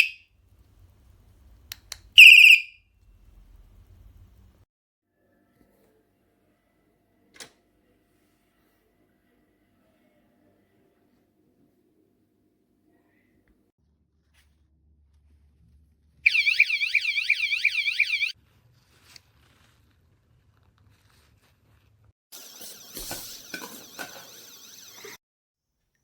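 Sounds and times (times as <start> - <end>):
warbling electronic alarm siren: 2.2 - 2.6, 16.3 - 18.3, 22.4 - 25.2.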